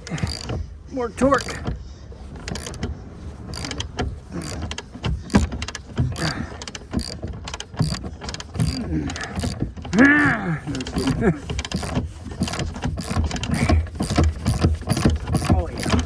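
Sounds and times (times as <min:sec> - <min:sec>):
ratchet wrench clicking: 0:00.0 - 0:00.6, 0:01.4 - 0:01.6, 0:02.4 - 0:02.8, 0:03.5 - 0:09.6, 0:10.7 - 0:16.0.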